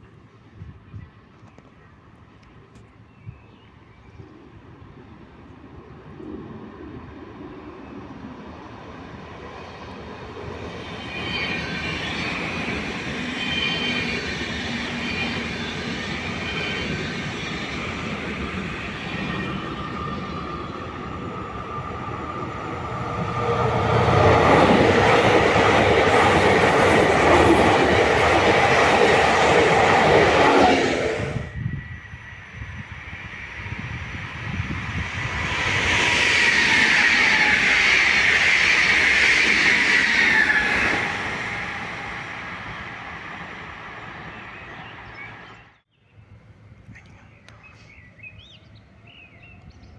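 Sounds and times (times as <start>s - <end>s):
train rumbling past: 4.6s - 46.8s
train wheel squeal: 9.4s - 45.8s.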